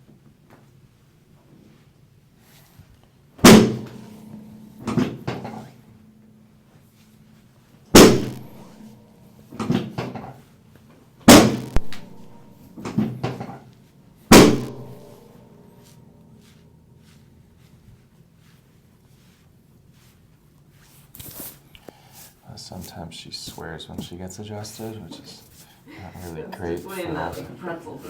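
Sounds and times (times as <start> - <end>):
table section slamming with clack: 3.4 - 5.7, 8.0 - 8.9, 11.3 - 13.6, 14.3 - 15.4.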